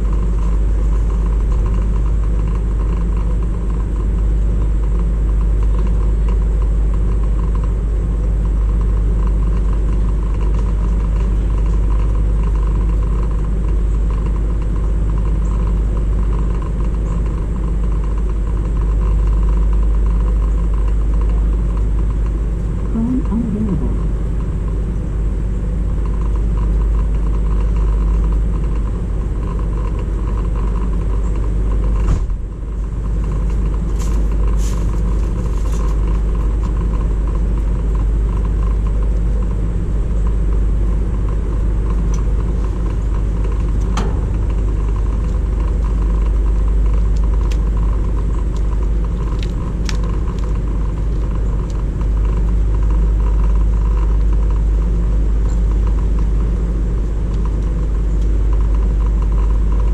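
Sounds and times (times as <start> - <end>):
vehicle low rumble: 20.4 - 25.2, 38.6 - 59.9.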